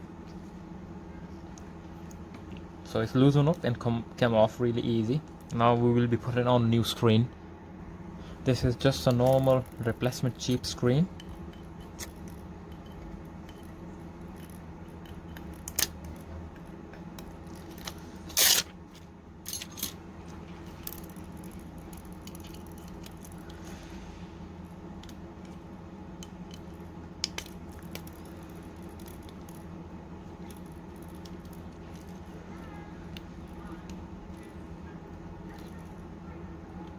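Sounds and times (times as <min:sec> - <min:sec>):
steady low hum: 0:00.0 - 0:36.9
small tools clicking and tapping: 0:09.0 - 0:18.6, 0:19.5 - 0:23.6, 0:26.2 - 0:29.7.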